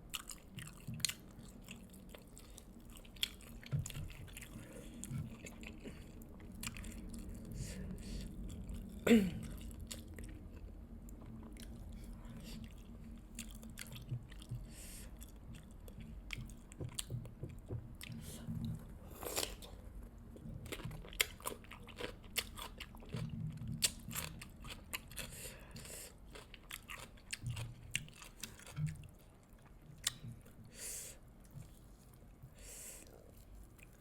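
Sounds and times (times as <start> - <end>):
chewing and lip-smacking: 0.1 - 19.7, 20.3 - 30.6
crunching fried chicken: 20.7 - 29.0.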